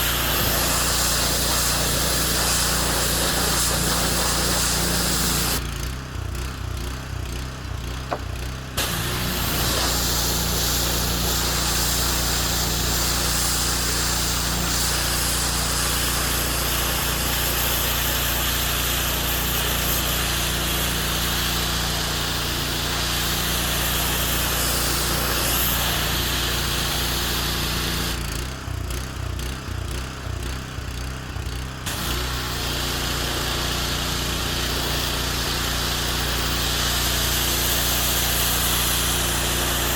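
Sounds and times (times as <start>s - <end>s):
loud hissing: 0.0s - 5.6s, 8.8s - 28.2s
small petrol engine running: 0.0s - 39.9s.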